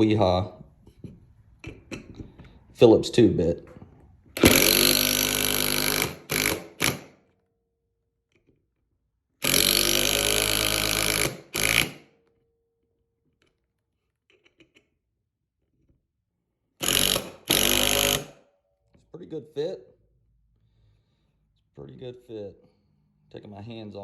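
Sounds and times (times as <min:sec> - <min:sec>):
impact driver driving screws: 0:04.4 - 0:07.2, 0:09.4 - 0:12.1, 0:16.8 - 0:18.4.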